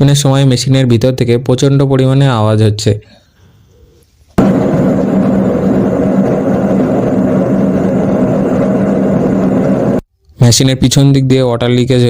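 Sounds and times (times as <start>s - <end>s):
washing machine spinning: 4.4s - 10.0s.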